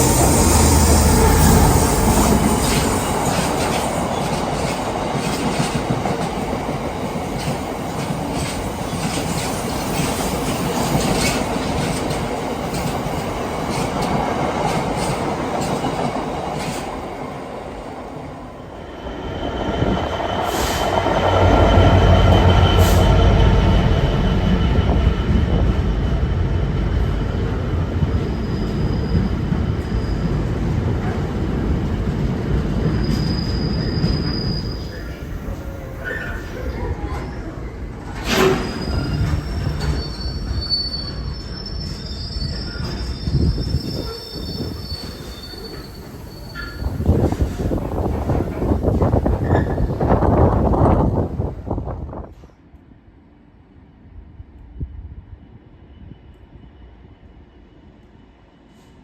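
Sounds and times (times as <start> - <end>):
train wheels on rails clicking: 0.0 - 18.3
train deep rumble: 0.0 - 52.5
thin steady high squeal: 33.0 - 36.4, 38.4 - 47.1.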